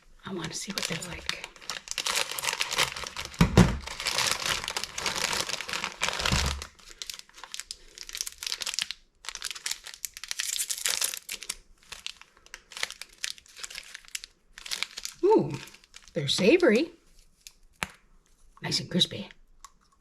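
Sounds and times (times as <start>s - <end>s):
plastic bag crinkling: 0.2s - 17.7s.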